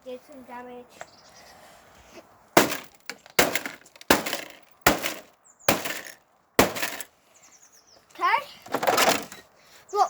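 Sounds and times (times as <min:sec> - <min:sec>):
glass cracking and breaking: 0:02.6 - 0:07.1
television being smashed: 0:02.6 - 0:07.1, 0:08.7 - 0:09.4.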